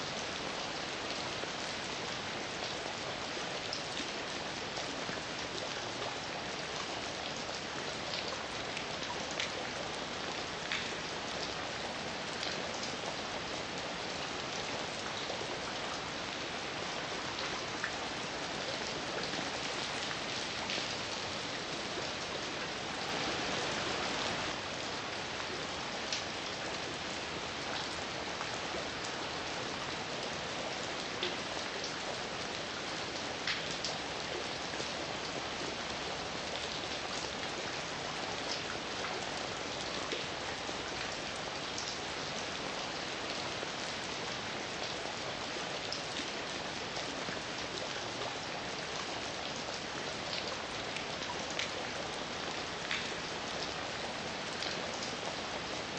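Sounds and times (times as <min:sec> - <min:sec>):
raindrops pattering: 0:14.9 - 0:29.5, 0:52.6 - 0:55.9.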